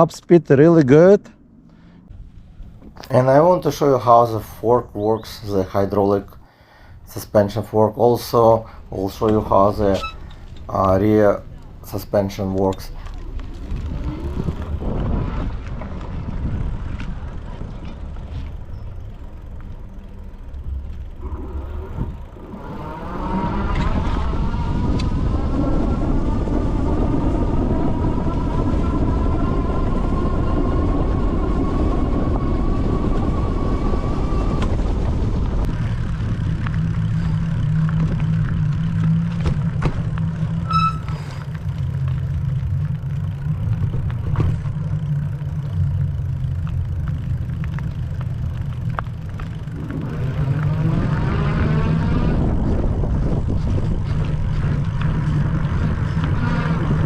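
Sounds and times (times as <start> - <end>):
low rumble of riding: 0.0 - 57.0
electric bike motor whining: 12.8 - 57.0.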